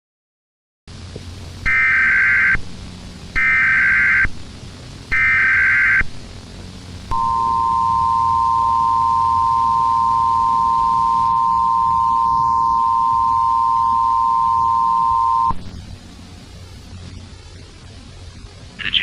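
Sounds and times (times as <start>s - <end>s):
low hum: 0.9s - 18.9s
digital data bursts: 1.6s - 2.6s, 3.4s - 4.3s, 5.1s - 6.1s, 7.1s - 15.7s, 16.5s - 19.0s
two-tone attention signal: 7.1s - 15.6s.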